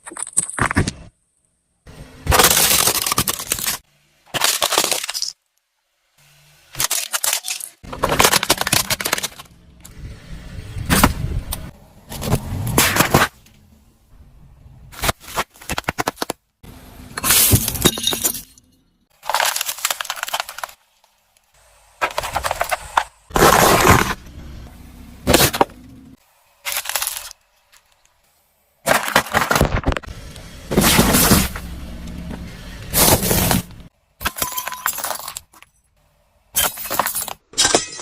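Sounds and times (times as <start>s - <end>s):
objects crunching under car tyres: 6.7s - 10.0s, 10.8s - 13.6s, 19.1s - 21.2s, 21.9s - 28.2s, 28.8s - 35.6s.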